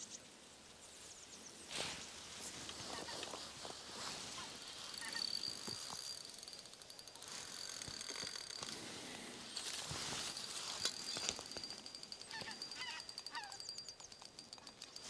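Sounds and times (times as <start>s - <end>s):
fishing reel whirring: 4.2s - 15.0s.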